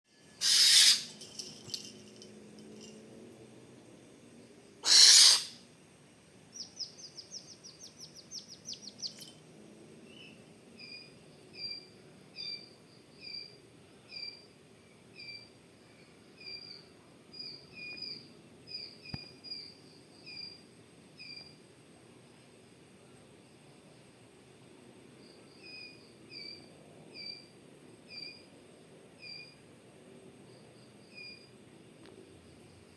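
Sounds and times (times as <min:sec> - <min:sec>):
owl chittering notes: 0:00.4 - 0:01.1, 0:04.8 - 0:05.5
owl short chirp: 0:00.4 - 0:01.1, 0:04.8 - 0:05.6
owl hissing screeches: 0:00.4 - 0:01.2, 0:04.8 - 0:05.6.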